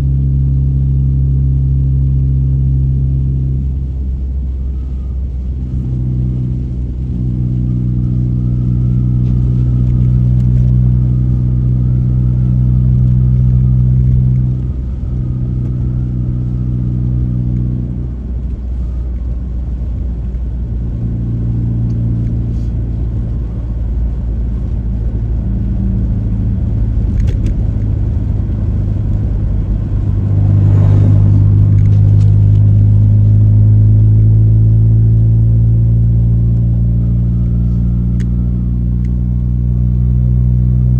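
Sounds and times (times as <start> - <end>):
vehicle engine and road noise: 0.0 - 40.9.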